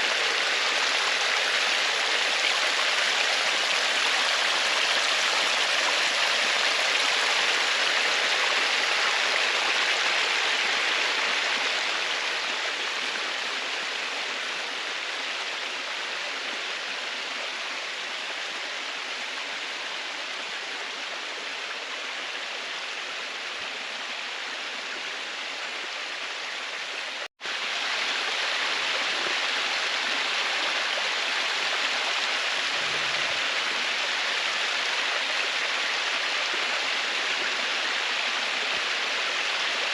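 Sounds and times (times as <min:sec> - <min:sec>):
stream water rushing: 0:00.0 - 0:39.9.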